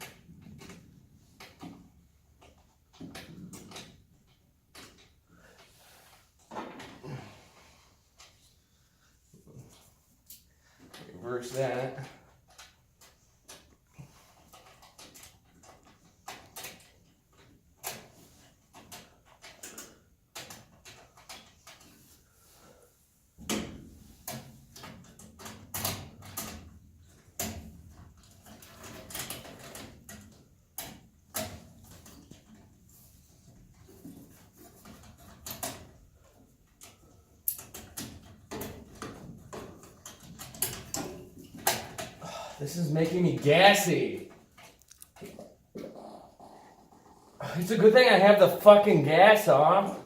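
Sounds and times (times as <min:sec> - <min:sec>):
hand tools clicking and knocking: 0:33.8 - 0:42.4.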